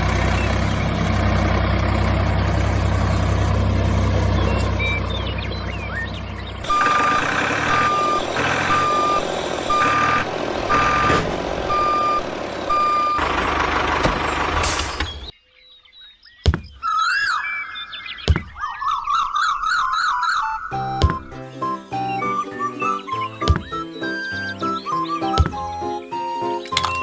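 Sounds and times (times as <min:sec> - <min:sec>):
truck engine running: 0:00.0 - 0:15.3, 0:20.8 - 0:27.0
truck reversing alarm beeping: 0:00.0 - 0:15.3, 0:20.5 - 0:27.0
gliding whistle-like tones: 0:21.6 - 0:27.0.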